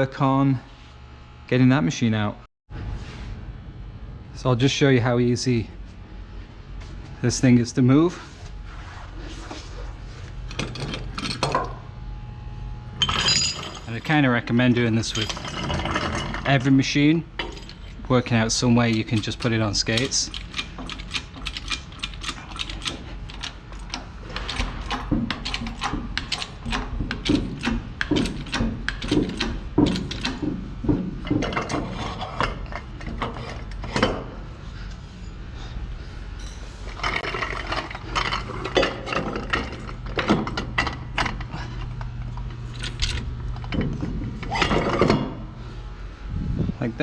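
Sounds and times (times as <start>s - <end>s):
steady low hum: 0.0s - 47.0s
clanking of steel parts: 10.5s - 11.8s, 13.0s - 34.3s, 36.4s - 45.4s
metallic clicking and ratcheting: 18.8s - 30.4s.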